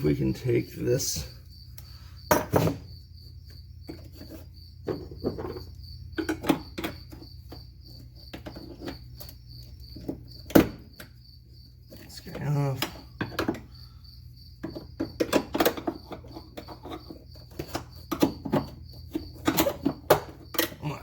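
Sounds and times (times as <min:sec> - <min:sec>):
crickets chirping: 0:00.0 - 0:21.0
clicks and knocks from hands working: 0:03.9 - 0:11.2, 0:12.0 - 0:13.7, 0:14.6 - 0:20.8.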